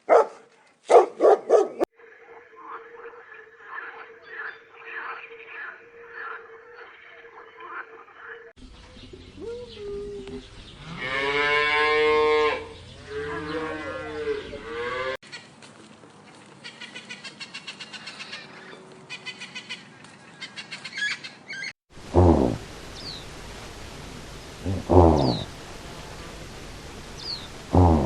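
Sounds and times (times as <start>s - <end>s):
cow mooing: 10.8s - 15.2s, 27.7s - 28.0s.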